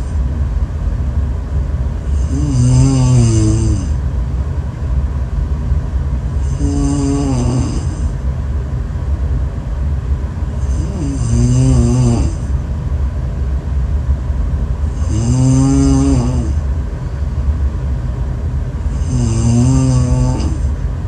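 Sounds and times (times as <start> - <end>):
steady low hum: 0.0 - 21.0
person snoring: 2.1 - 4.0, 6.4 - 8.1, 10.6 - 12.5, 14.9 - 16.6, 18.9 - 20.7.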